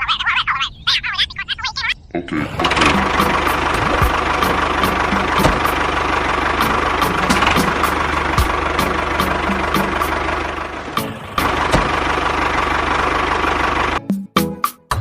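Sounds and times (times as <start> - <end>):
small tractor engine running: 2.4 - 14.0
regular knocking: 2.6 - 13.0.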